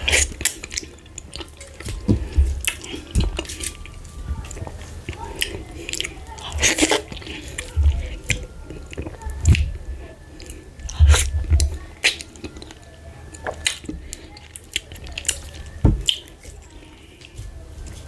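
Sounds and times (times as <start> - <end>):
close chewing: 0.0 - 18.0
wet mouth clicks: 13.4 - 13.9.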